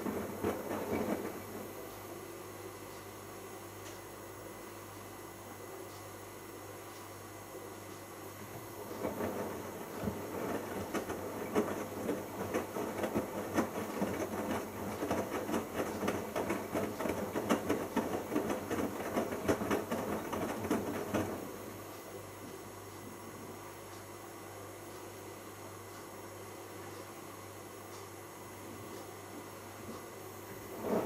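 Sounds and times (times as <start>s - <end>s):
washing machine drum tumbling laundry: 0.0s - 2.1s, 8.5s - 21.9s, 30.5s - 31.0s
low steady hum: 0.0s - 31.0s.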